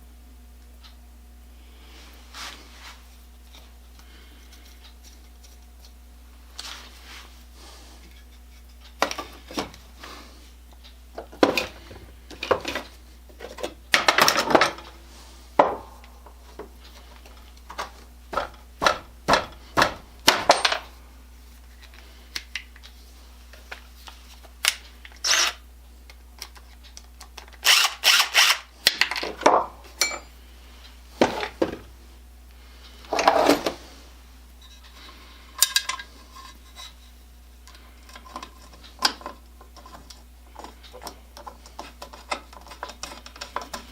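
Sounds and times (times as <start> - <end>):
low background hum: 0.0 - 43.9
metal parts rattling: 20.3 - 20.9
metal tools clinking: 20.5 - 20.9, 30.0 - 30.4.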